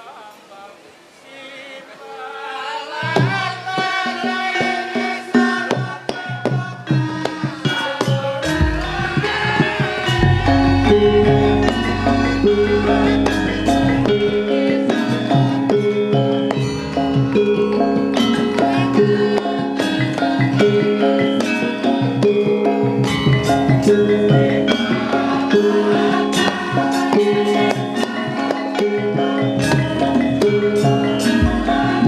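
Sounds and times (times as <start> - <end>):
hand drum strokes: 3.1 - 32.0
gamelan music: 3.4 - 32.0
deep bass tone: 8.6 - 14.6, 31.4 - 32.0.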